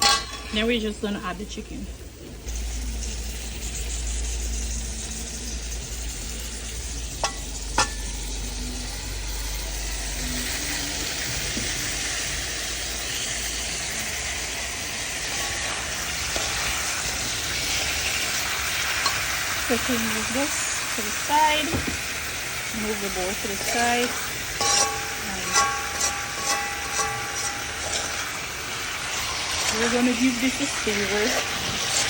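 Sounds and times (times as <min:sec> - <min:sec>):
chicken sizzling in oil: 0:02.4 - 0:32.0
stirring in a pot: 0:15.2 - 0:32.0.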